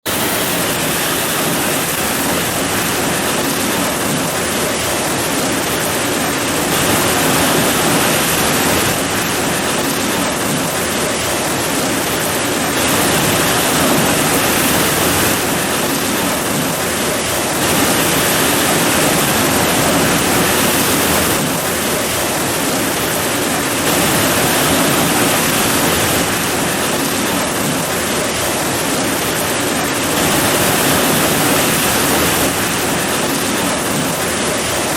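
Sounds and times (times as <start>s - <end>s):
heavy rain pouring: 0.0s - 34.9s.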